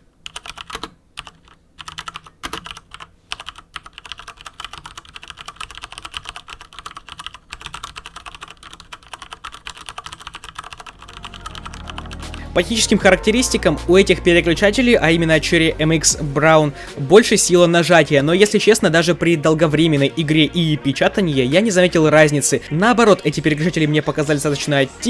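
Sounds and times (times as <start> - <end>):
mechanical keyboard typing: 0.2 - 12.4.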